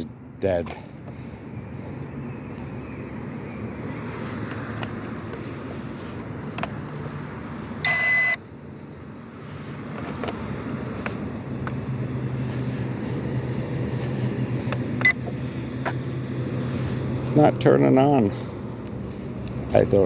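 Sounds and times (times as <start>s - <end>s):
loud electronic beep: 7.8s - 8.4s.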